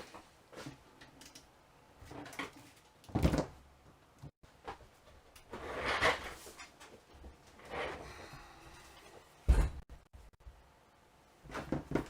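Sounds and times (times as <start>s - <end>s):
rustling and scraping: 4.6s - 8.2s.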